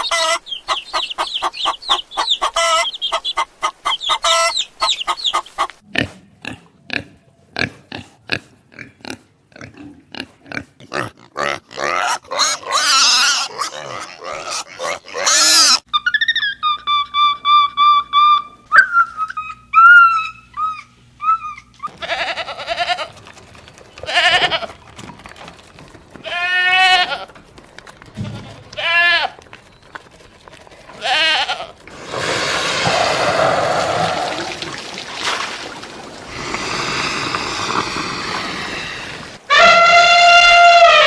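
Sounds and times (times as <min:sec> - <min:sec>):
goats bleating: 0:21.9 - 0:23.1, 0:24.0 - 0:24.8, 0:26.2 - 0:27.3, 0:28.2 - 0:29.4, 0:30.9 - 0:31.8.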